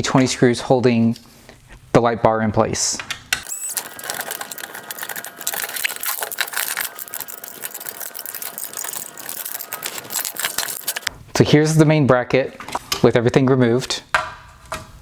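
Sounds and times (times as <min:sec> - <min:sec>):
screwdriver clicking and rattling: 0:03.4 - 0:11.1.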